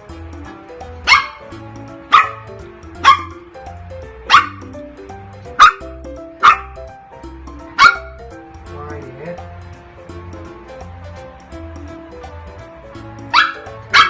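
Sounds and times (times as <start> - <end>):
background music: 0.0 - 14.0
puppy barking: 1.0 - 1.5, 2.1 - 3.4, 4.3 - 4.7, 5.6 - 6.8, 7.7 - 8.2, 13.3 - 14.0.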